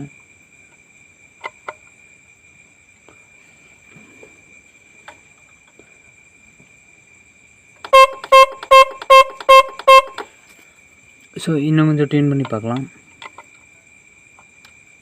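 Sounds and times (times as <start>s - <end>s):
electric horn blast: 7.9s - 10.2s
faint ticks: 14.3s - 14.8s.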